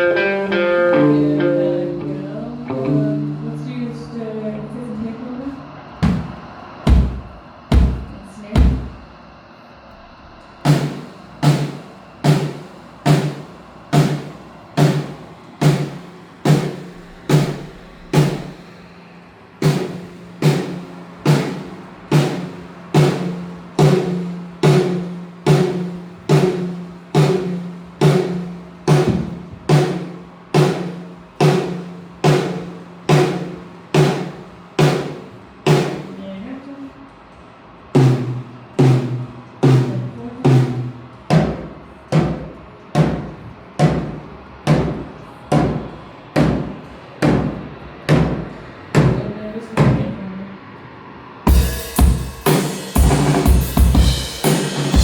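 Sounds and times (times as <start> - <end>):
low drum hits: 6.0 - 9.0, 24.7 - 36.2.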